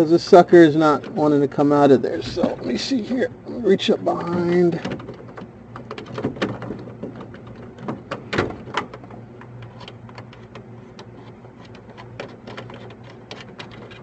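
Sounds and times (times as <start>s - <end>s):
faint low hum: 0.0s - 14.0s
clicks and scrapes of switch bezel: 8.8s - 14.0s.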